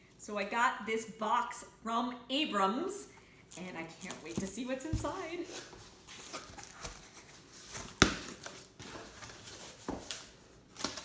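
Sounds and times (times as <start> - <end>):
cardboard rustling and scraping: 3.6 - 11.0.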